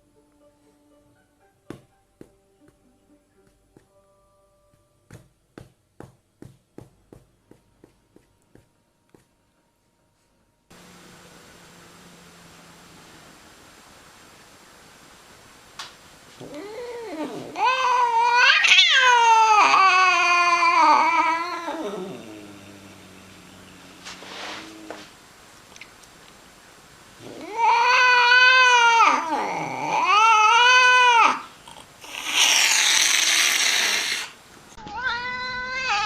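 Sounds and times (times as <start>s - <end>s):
cat yowling angrily: 16.4s - 22.5s, 27.2s - 36.0s.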